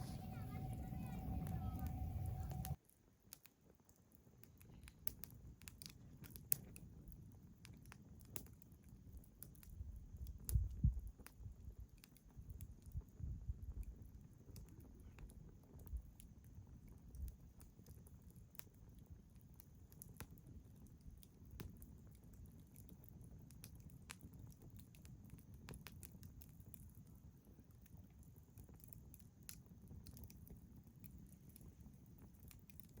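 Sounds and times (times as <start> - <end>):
low rumble: 0.0 - 2.8
campfire crackling: 0.0 - 33.0.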